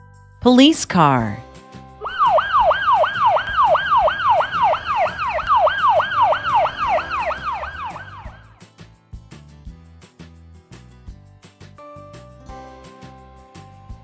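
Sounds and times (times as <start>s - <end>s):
police siren yelping: 2.0s - 8.5s.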